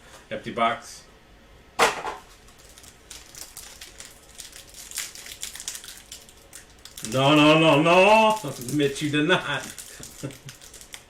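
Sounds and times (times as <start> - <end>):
cards and packaging crinkling: 2.2 - 11.0.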